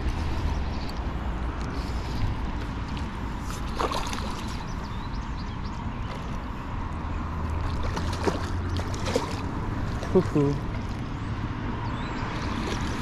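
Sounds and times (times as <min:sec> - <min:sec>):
water sloshing and trickling: 0:00.0 - 0:13.0
fish splashing: 0:02.9 - 0:04.7, 0:07.4 - 0:11.1.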